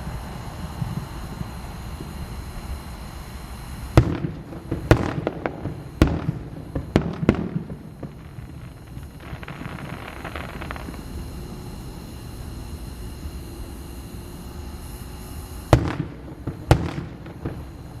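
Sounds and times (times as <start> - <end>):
firework bangs with echo: 0.0 - 2.3, 3.9 - 11.9, 15.7 - 18.0
firework crackling: 0.0 - 18.0.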